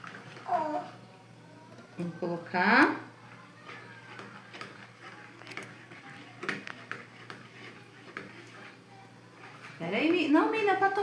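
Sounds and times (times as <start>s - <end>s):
faint sharp clicks and taps: 4.0s - 8.7s.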